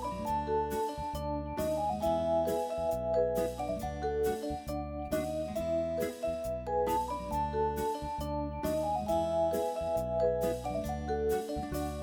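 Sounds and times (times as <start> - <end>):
plucked string and keyboard music: 0.0 - 12.0.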